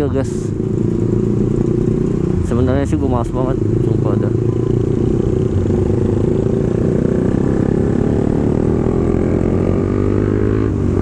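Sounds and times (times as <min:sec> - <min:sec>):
motorcycle engine running: 0:00.0 - 0:11.0.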